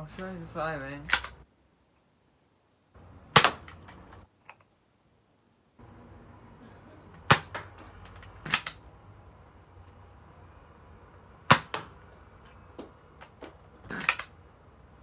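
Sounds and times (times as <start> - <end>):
toy blaster snaps: 1.1 - 1.4, 7.3 - 8.8, 13.9 - 14.3.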